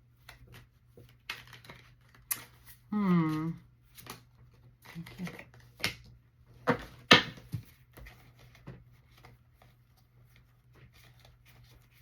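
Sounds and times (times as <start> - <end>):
card rustles and ticks: 0.1 - 2.9
cards slapping on table: 6.7 - 7.6.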